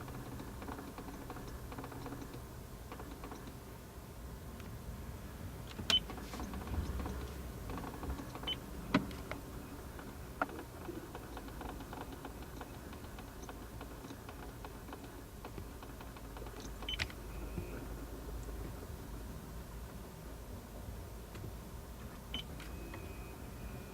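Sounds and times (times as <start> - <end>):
sharp clicks and ticks: 0.0 - 3.6, 10.0 - 17.2.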